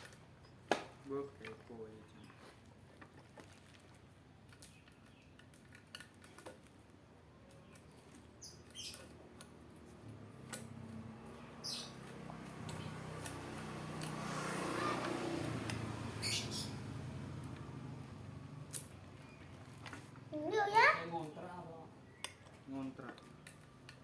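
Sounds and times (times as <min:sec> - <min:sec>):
small metal parts clinking: 0:03.0 - 0:06.9
short high squeaks: 0:14.3 - 0:15.2.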